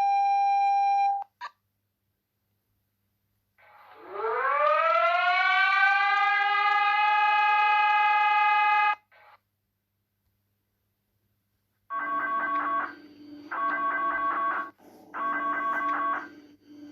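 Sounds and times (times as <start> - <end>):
civil defense siren: 4.0 - 7.9.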